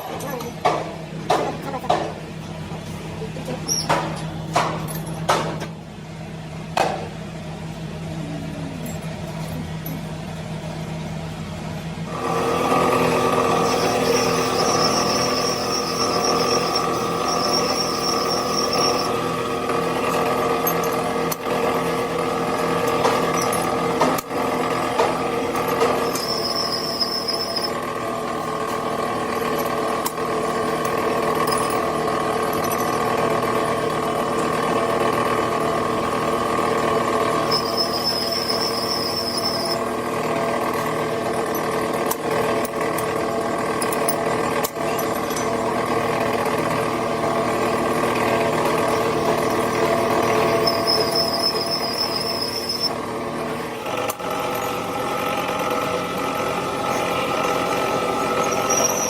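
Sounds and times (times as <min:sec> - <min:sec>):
power tool running: 0:12.0 - 0:59.0
high squeal: 0:13.3 - 0:19.2, 0:26.0 - 0:27.8, 0:37.4 - 0:39.8, 0:50.3 - 0:53.0, 0:58.2 - 0:59.0.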